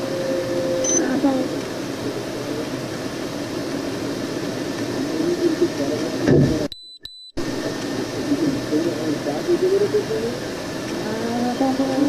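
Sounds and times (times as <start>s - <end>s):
faint high beep: 0.8s - 1.1s.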